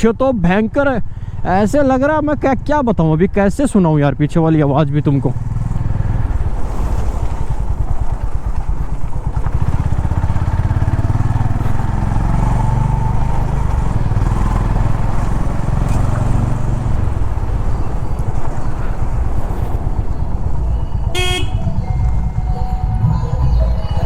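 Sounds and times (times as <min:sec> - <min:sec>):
motorcycle engine running: 0:04.6 - 0:23.4.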